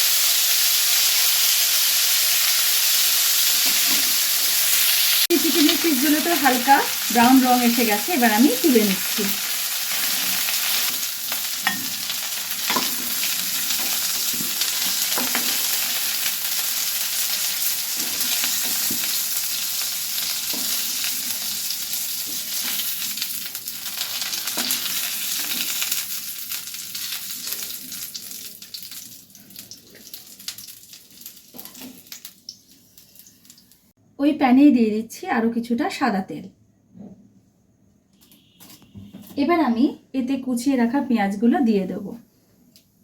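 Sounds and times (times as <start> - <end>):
chicken sizzling in oil: 0.0 - 33.8.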